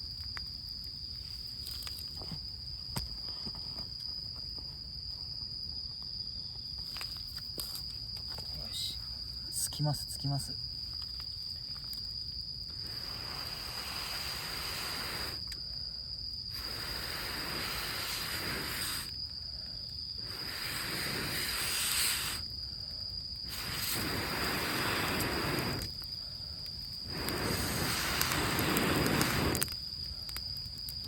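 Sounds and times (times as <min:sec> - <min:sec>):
cricket trilling: 0:00.0 - 0:31.0
hissing blows of air into fire: 0:12.6 - 0:30.7.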